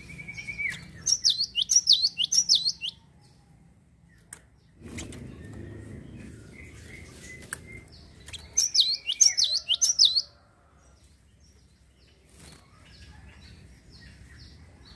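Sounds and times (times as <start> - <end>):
songbird chirping: 0.0 - 14.9
low rumble: 4.6 - 8.6.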